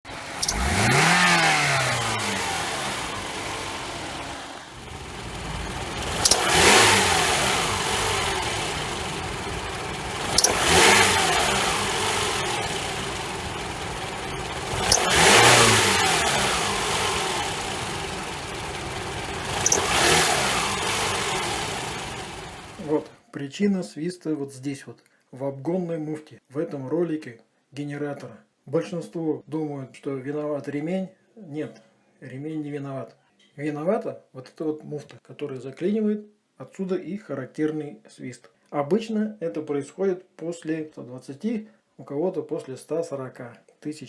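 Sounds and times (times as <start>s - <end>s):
car engine revving: 0.1s - 23.1s.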